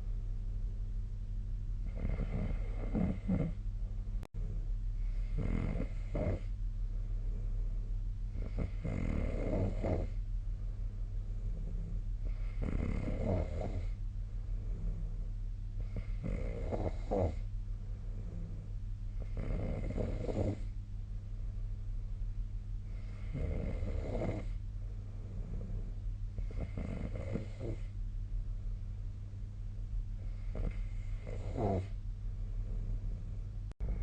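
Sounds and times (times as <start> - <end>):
steady low hum: 0.0 - 34.0
person snoring: 1.8 - 3.6, 5.1 - 6.5, 8.3 - 10.2, 11.4 - 14.0, 14.6 - 17.5, 18.2 - 20.7, 22.9 - 24.6, 25.2 - 27.9, 30.2 - 32.0.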